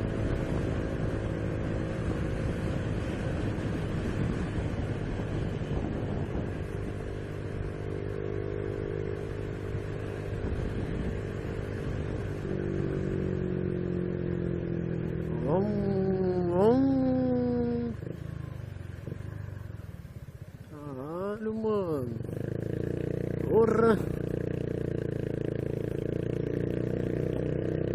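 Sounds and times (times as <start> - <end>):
wind noise: 0.0 - 8.1, 9.3 - 13.4
motorcycle engine revving: 0.0 - 27.9.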